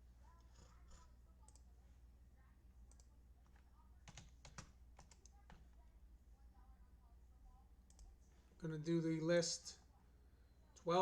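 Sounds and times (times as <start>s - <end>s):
computer keyboard typing: 2.9s - 5.6s.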